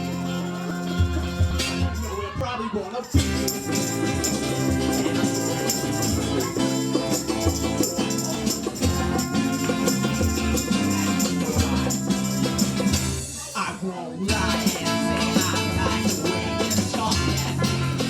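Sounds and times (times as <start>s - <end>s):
band playing rocksteady: 0.0s - 2.4s, 3.1s - 13.7s, 14.3s - 18.0s
steady percussion: 0.0s - 2.4s, 3.0s - 13.6s, 14.3s - 18.0s
stepping bass line: 3.2s - 13.4s, 14.3s - 18.0s.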